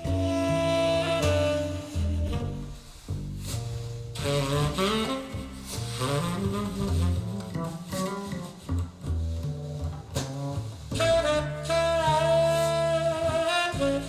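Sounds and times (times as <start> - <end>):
saxophone: 0.0 - 8.8, 10.9 - 14.0
double bass: 0.0 - 14.0.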